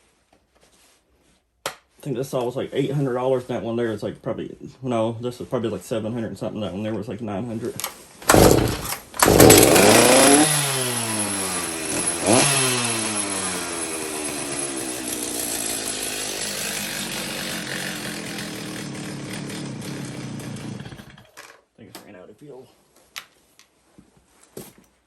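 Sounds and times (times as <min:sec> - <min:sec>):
chainsaw engine revving and idling: 0:08.3 - 0:21.3.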